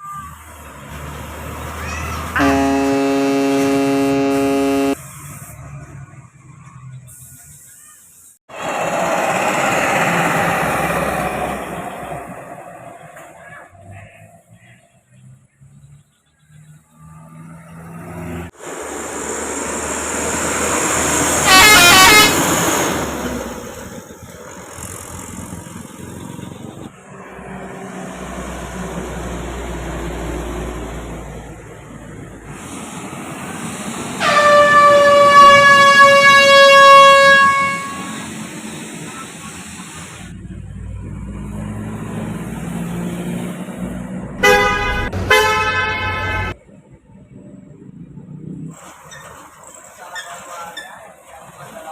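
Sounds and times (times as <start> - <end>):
vehicle engine and tyre noise: 0.0 - 51.9
vehicle rumble: 0.0 - 51.9
musical vehicle horn: 2.3 - 5.0, 21.4 - 22.7, 34.2 - 38.4, 44.4 - 46.6.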